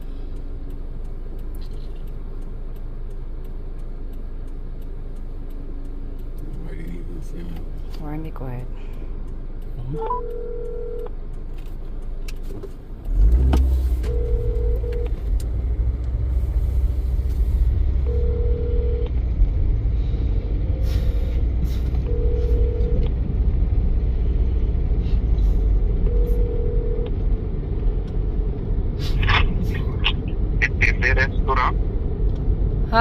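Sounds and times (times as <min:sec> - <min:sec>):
low steady rumble: 0:00.0 - 0:33.0
telephone ringback tone: 0:10.1 - 0:11.1, 0:14.1 - 0:15.1, 0:18.1 - 0:19.1, 0:22.1 - 0:23.0, 0:26.1 - 0:27.0.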